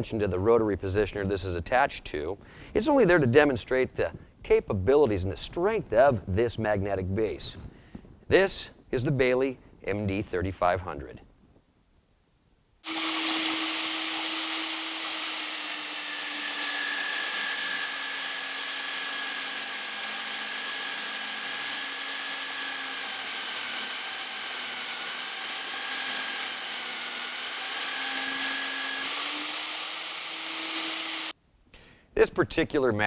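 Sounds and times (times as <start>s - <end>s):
drill motor whining: 12.8s - 31.4s.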